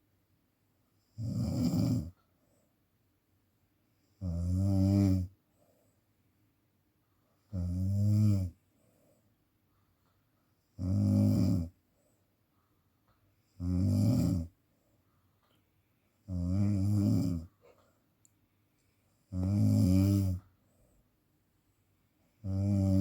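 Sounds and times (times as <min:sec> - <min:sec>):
person snoring: 0:01.2 - 0:02.1, 0:10.8 - 0:11.7, 0:13.6 - 0:14.5, 0:16.3 - 0:17.5, 0:19.3 - 0:20.4, 0:22.4 - 0:23.0.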